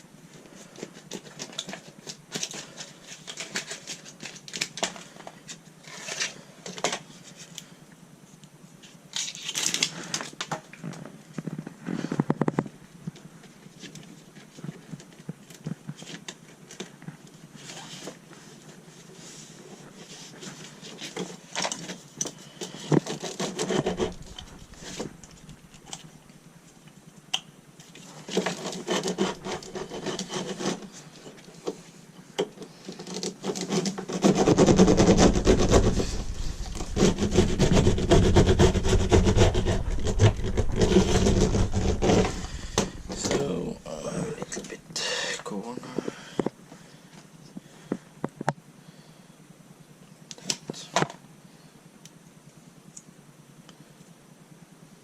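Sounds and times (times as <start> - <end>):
mat rubbing and scraping: 22.7 - 26.2, 28.1 - 31.8, 32.9 - 44.9.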